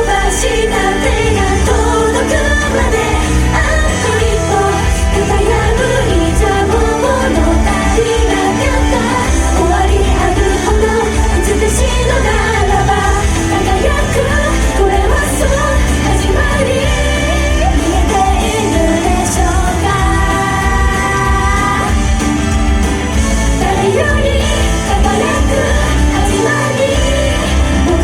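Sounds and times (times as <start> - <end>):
heavy bass line: 0.0 - 28.0
pop music with woman singing: 0.0 - 28.0.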